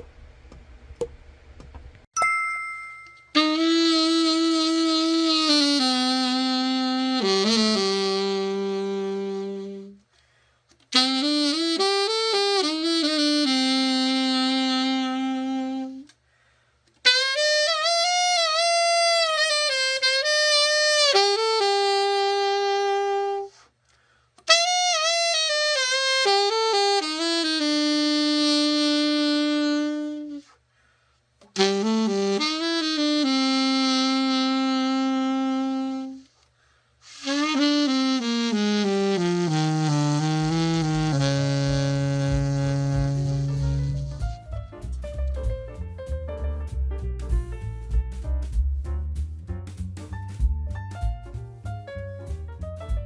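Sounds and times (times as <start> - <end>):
alto saxophone held notes: 3.3 - 10.1, 10.9 - 16.2, 17.0 - 23.7, 24.4 - 30.6, 31.5 - 36.4, 37.0 - 45.2.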